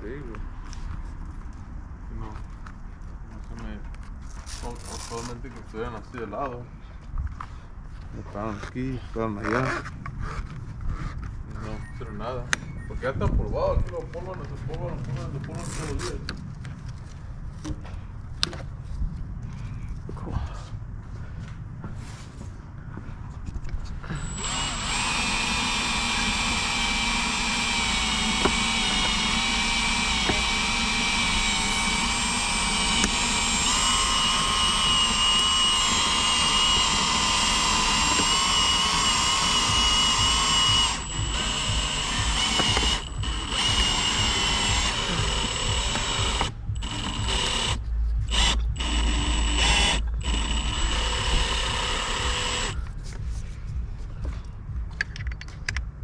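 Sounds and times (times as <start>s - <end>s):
power tool whining: 24.0s - 52.9s.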